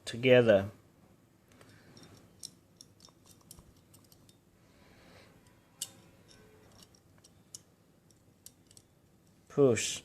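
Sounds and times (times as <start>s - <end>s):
small metal parts clicking and scraping: 1.6s - 4.5s, 5.2s - 9.4s.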